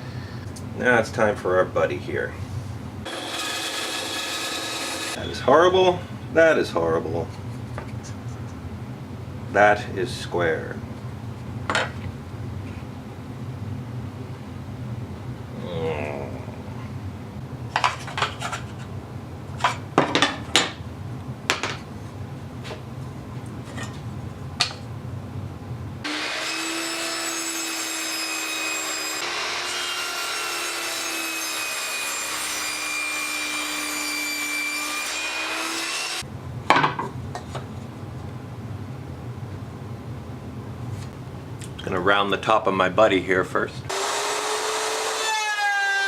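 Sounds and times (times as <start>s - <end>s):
small power tool running: 3.1s - 5.2s, 26.1s - 34.3s, 43.9s - 46.0s.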